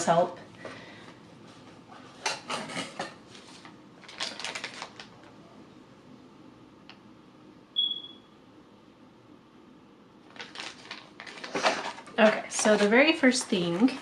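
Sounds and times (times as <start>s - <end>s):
packaging rustling and clicking: 3.4s - 5.3s, 10.3s - 14.0s.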